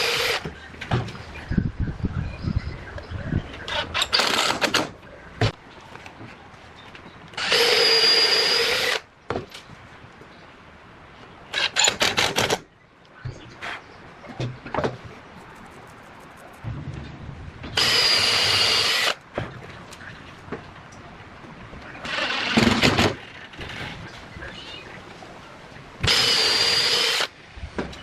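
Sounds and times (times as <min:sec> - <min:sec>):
electric hand drill whining: 0:00.0 - 0:00.4, 0:07.4 - 0:09.0, 0:17.8 - 0:19.2, 0:26.0 - 0:27.3.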